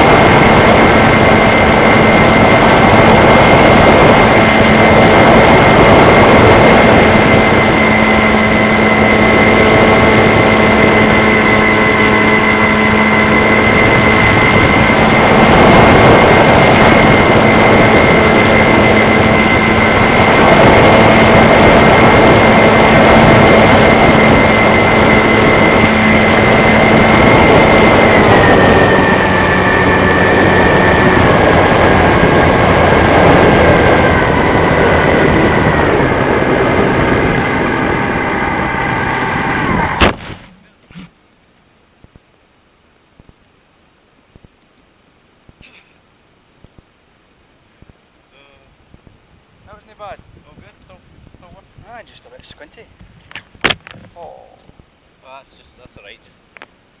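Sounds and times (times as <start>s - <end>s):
model plane motor whining: 0.0s - 40.6s.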